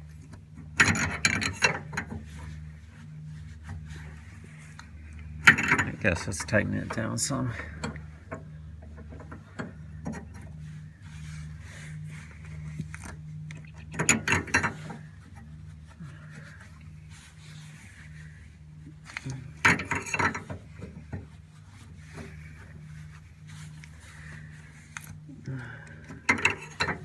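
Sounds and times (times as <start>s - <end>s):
steady low hum: 0.0s - 27.0s
wrench clicking and clanking: 26.3s - 27.0s.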